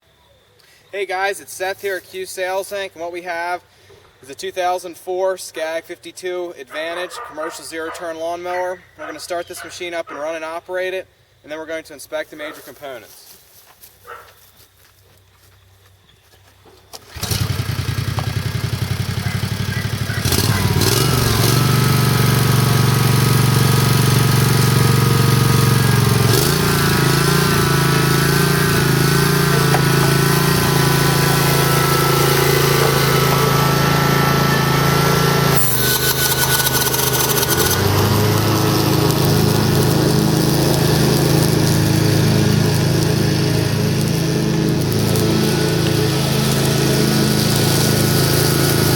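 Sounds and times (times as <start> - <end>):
lawn mower engine running: 16.9 - 48.9.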